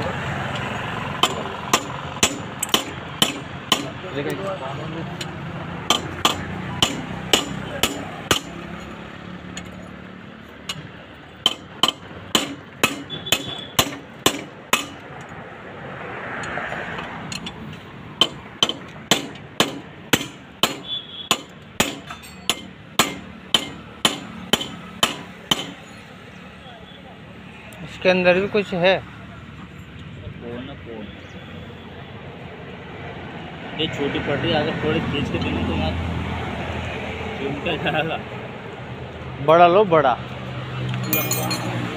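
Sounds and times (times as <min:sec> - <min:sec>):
hammer striking metal: 0:01.2 - 0:04.0, 0:05.8 - 0:08.9, 0:10.6 - 0:15.1, 0:18.2 - 0:25.9, 0:41.0 - 0:41.9.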